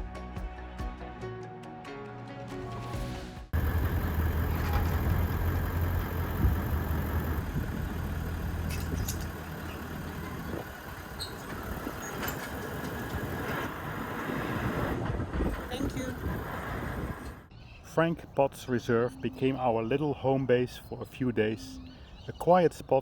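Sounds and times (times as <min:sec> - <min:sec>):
engine humming: 0:03.5 - 0:17.5.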